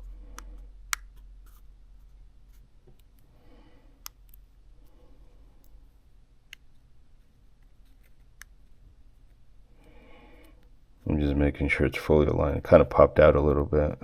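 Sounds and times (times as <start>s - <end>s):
faint clicks of phone parts: 0.1s - 1.2s.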